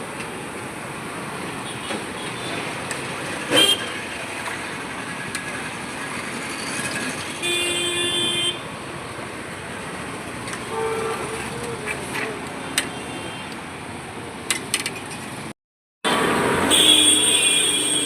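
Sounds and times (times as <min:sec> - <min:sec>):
street traffic: 0:00.0 - 0:18.0
vehicle horn honking: 0:07.4 - 0:08.6, 0:10.7 - 0:11.3, 0:16.6 - 0:18.0.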